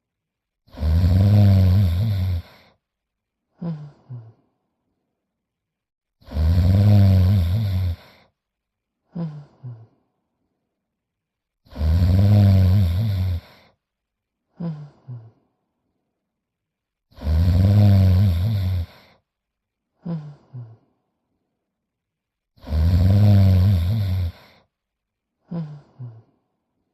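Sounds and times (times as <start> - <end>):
cartoon dog snoring: 0.6 - 2.8, 3.5 - 4.4, 6.2 - 8.3, 9.1 - 10.0, 11.6 - 13.8, 14.5 - 15.4, 17.1 - 19.2, 20.0 - 20.9, 22.6 - 24.7, 25.4 - 26.4.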